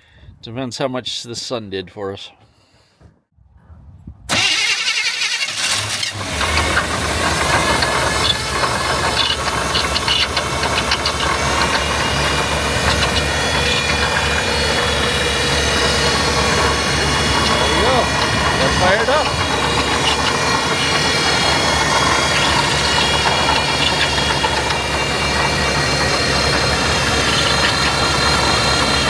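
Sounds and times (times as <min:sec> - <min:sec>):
starter motor cranking: 0:04.3 - 0:29.0
engine running with knocks: 0:05.7 - 0:29.0.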